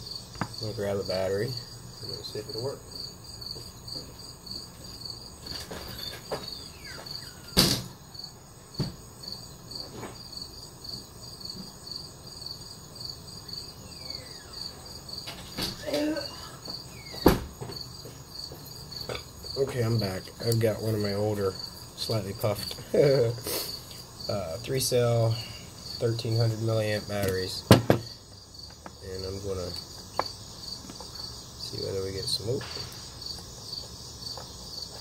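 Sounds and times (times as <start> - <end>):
cricket chirping: 0.0 - 35.0
sharp knocks: 17.2 - 17.8, 27.7 - 28.1.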